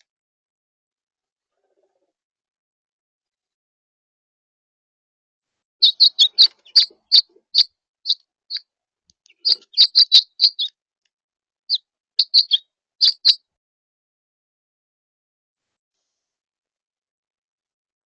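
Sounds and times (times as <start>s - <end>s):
songbird chirping: 5.8s - 8.6s, 9.2s - 10.7s, 11.7s - 13.4s.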